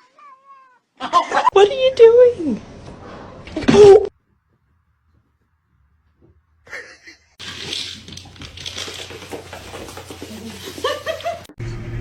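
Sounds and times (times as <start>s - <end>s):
cat meowing: 0.0s - 0.9s.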